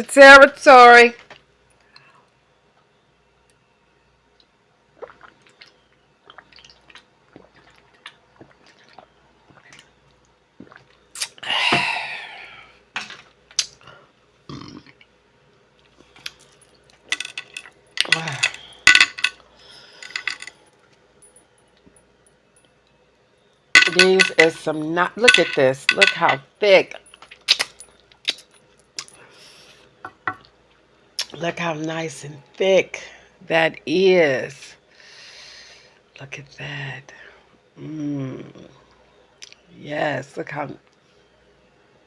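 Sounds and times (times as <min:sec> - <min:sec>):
wet mouth eating sounds: 0:05.0 - 0:10.0, 0:10.6 - 0:11.4
shellfish and cutlery clicks: 0:17.1 - 0:19.4, 0:23.8 - 0:24.5, 0:25.2 - 0:26.4, 0:27.4 - 0:29.2.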